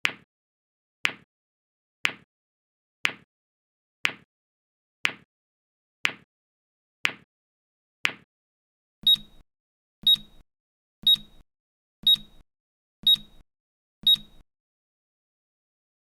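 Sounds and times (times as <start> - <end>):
high-pitched timer beeps: 9.0 - 9.4, 10.0 - 10.4, 11.0 - 11.4, 12.0 - 12.4, 13.0 - 13.4, 14.0 - 14.4.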